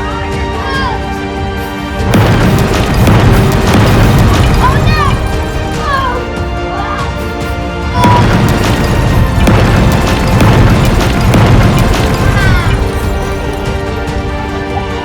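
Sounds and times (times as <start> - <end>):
background music: 0.0 - 15.0
booming battle sound effects: 2.0 - 5.9, 8.0 - 14.6.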